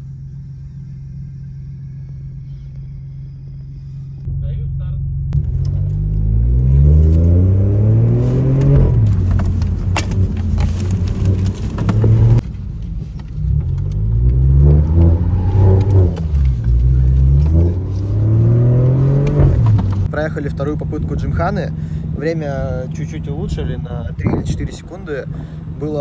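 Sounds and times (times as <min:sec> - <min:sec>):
car engine revving: 0:05.4 - 0:26.0.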